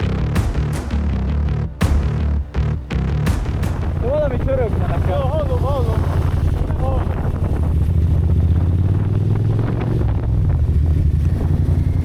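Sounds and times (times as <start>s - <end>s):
motorcycle engine drone: 0.0s - 12.0s
wind noise on microphone: 3.2s - 12.0s.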